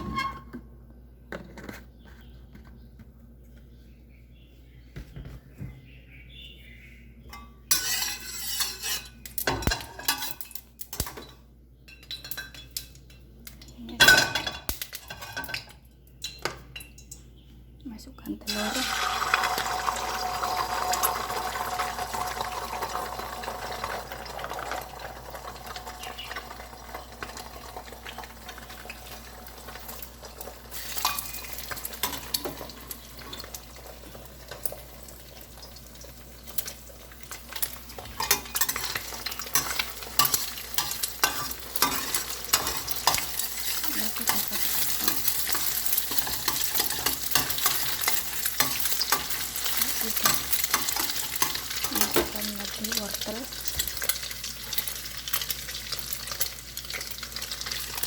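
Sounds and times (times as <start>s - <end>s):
utensil scraping a pan: 7.7s - 9.2s
egg sizzling in a pan: 18.5s - 58.0s.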